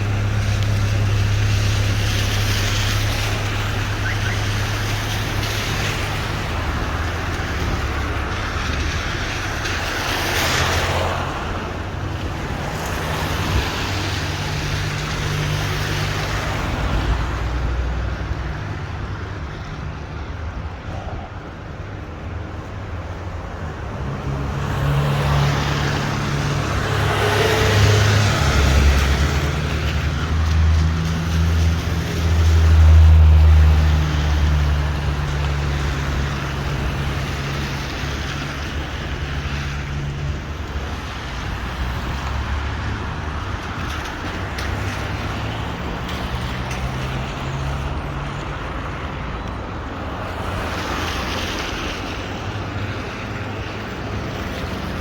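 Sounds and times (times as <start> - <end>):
traffic hiss: 0.0 - 55.0
vehicle engine passing: 24.0 - 43.4.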